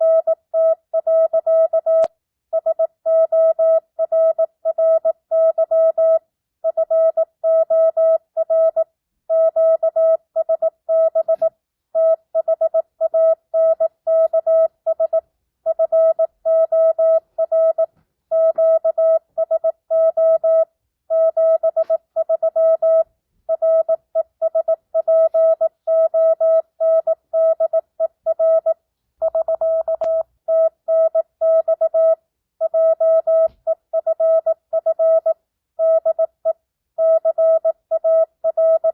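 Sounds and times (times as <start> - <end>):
morse code beeps: 0.0 - 38.9.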